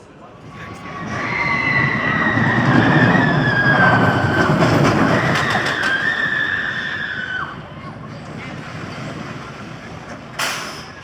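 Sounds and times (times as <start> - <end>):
roller coaster rumbling past: 0.1 - 11.0
high wheel whine: 0.3 - 11.0.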